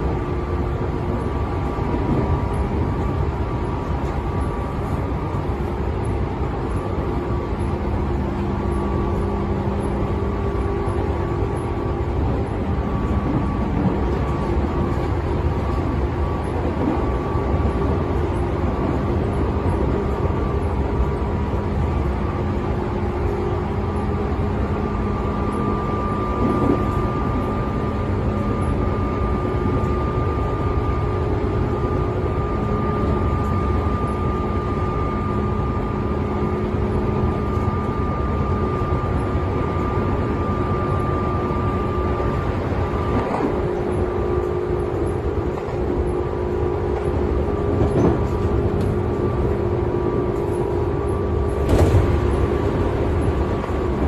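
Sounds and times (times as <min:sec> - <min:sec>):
train wheels rumbling on rail: 0:00.0 - 0:54.0.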